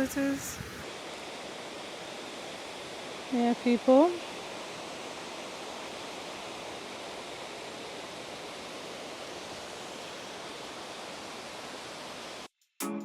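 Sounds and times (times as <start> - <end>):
waterfall and river rushing: 0.0 - 12.5.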